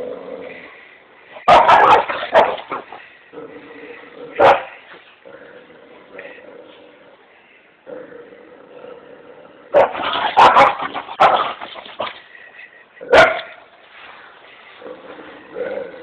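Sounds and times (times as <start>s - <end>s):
dog barking: 1.5s - 2.7s, 4.4s - 4.7s, 9.8s - 11.5s, 13.1s - 13.6s.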